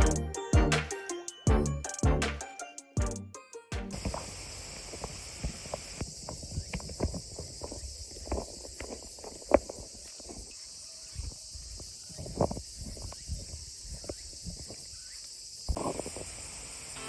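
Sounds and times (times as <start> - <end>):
steady high hiss: 4.0 - 12.0, 12.6 - 17.0
irregular footsteps: 4.0 - 16.0.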